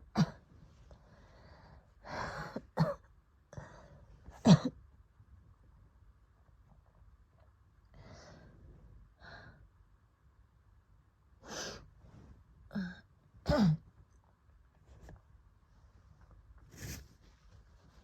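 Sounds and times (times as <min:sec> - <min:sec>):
faint breaths: 0:00.7 - 0:02.6, 0:07.9 - 0:09.7
woman coughing: 0:02.6 - 0:03.1, 0:04.4 - 0:04.8, 0:13.5 - 0:13.8.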